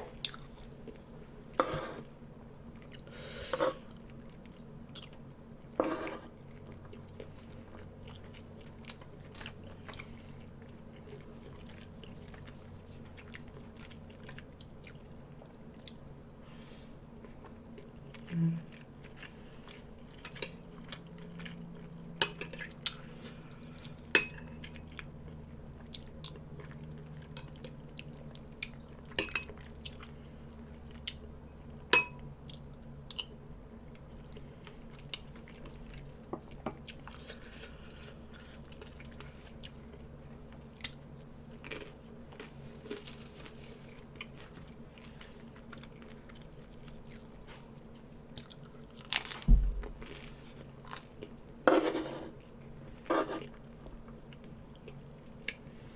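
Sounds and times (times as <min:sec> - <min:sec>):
person chewing food: 0:06.3 - 0:16.2, 0:32.0 - 0:51.4
cutlery clinking against a dish: 0:20.3 - 0:20.6, 0:22.2 - 0:22.8, 0:24.2 - 0:24.9, 0:29.2 - 0:29.6, 0:32.0 - 0:32.2.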